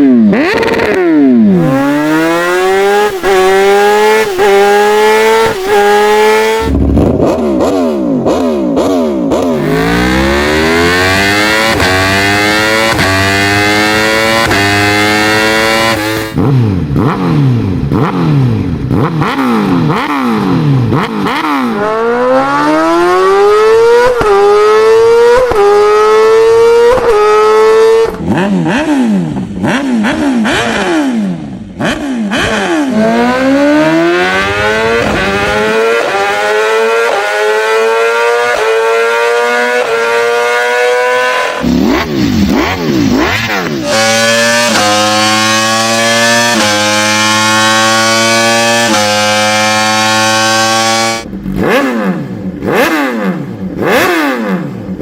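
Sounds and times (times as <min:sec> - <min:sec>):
motorcycle engines revving: 0:00.0 - 0:55.0.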